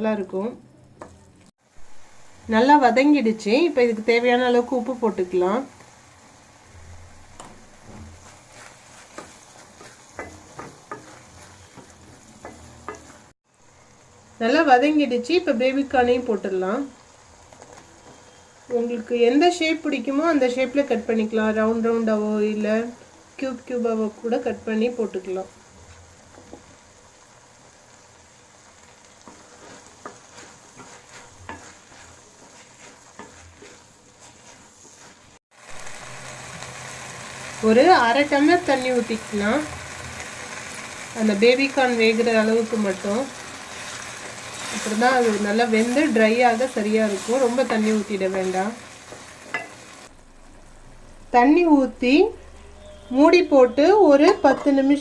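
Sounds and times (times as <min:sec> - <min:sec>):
faint sizzle: 0:00.0 - 0:55.0
spoon stirring food in pan: 0:07.4 - 0:13.3, 0:28.8 - 0:35.4, 0:41.6 - 0:50.1
spoon knocking against pan: 0:10.1 - 0:13.1
ladle scraping pan: 0:29.2 - 0:35.4.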